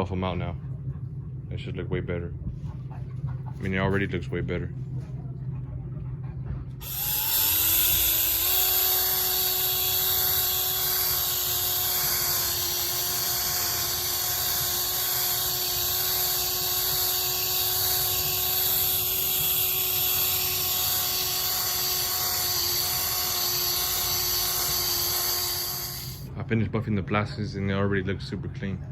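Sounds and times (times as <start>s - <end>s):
electric buffer motor whine: 6.8s - 26.3s.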